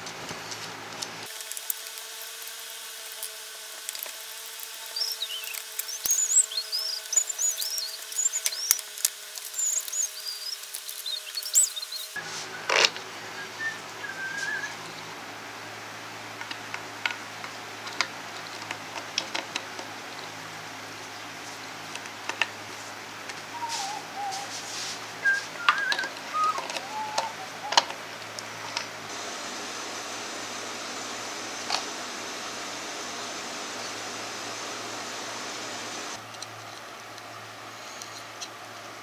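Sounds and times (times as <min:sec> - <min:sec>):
low electrical hum: 0:00.0 - 0:39.0
person whistling: 0:12.4 - 0:14.8, 0:23.6 - 0:24.5, 0:25.2 - 0:27.8.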